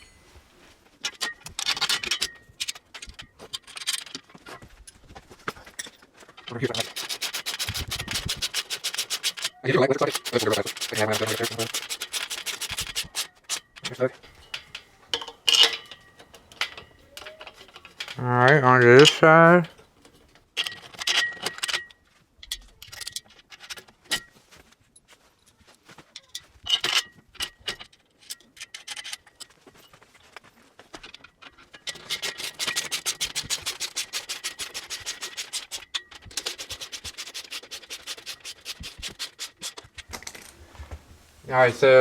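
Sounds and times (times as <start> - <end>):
metal parts clinking: 1.0 - 24.4, 26.1 - 40.6
ratchet wrench clicking: 6.7 - 13.9.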